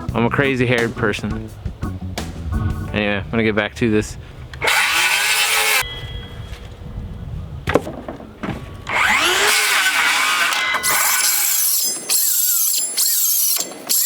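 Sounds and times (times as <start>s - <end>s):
circular saw cutting wood: 4.6s - 6.0s, 8.9s - 14.0s.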